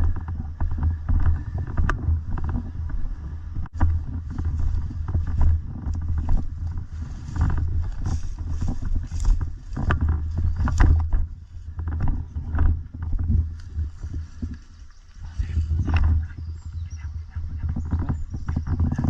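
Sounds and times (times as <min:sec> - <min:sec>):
footsteps and gear knocks: 0:00.0 - 0:14.9
wind rumble on microphone: 0:00.0 - 0:19.0.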